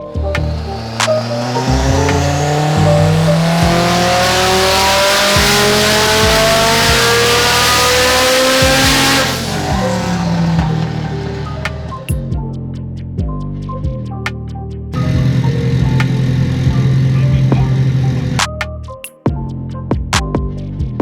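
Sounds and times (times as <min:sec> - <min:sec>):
race car engine at full throttle: 0:00.0 - 0:12.2, 0:15.0 - 0:18.4
music with heavy bass: 0:00.0 - 0:21.0.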